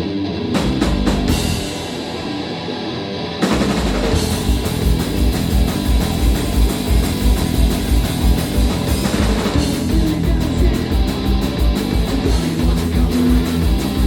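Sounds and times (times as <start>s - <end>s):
bass guitar: 0.0s - 14.0s
distorted electric guitars: 0.0s - 14.0s.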